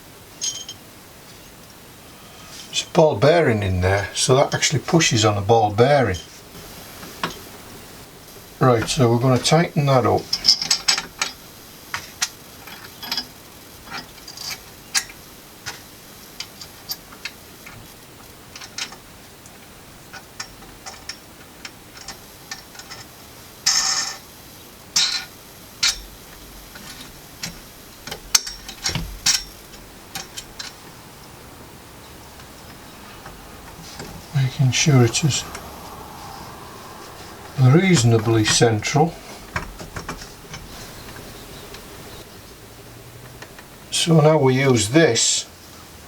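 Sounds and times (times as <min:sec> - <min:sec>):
metal parts clicking and clinking: 0:00.4 - 0:00.8, 0:10.3 - 0:15.8, 0:21.9 - 0:24.2, 0:25.0 - 0:30.8.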